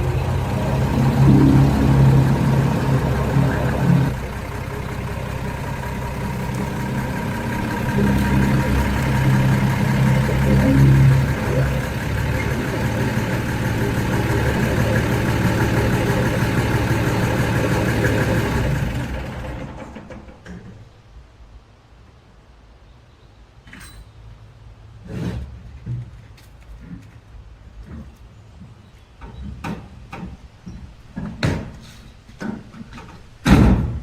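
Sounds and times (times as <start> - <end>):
diesel engine running: 0.0 - 20.5.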